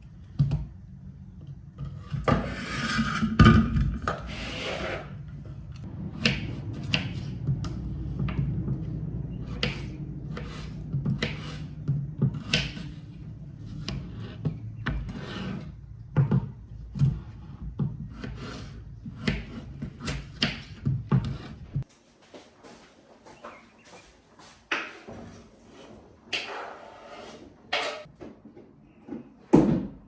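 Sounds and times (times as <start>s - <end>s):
rubbing and scraping strokes: 4.1s - 5.7s, 9.4s - 15.9s, 24.5s - 28.1s.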